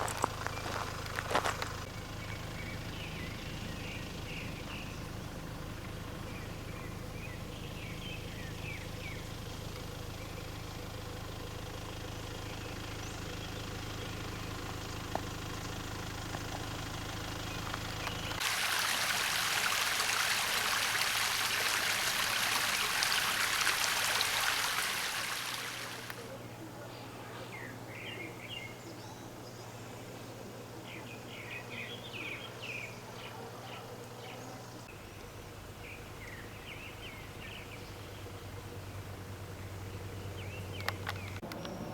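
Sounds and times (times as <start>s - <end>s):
stream flowing: 18.4s - 26.3s
bird chirps: 27.0s - 38.9s.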